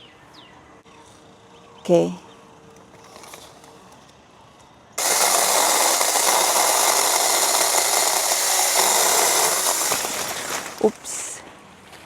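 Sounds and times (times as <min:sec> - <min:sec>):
electric chainsaw cutting branch: 0:05.0 - 0:11.4.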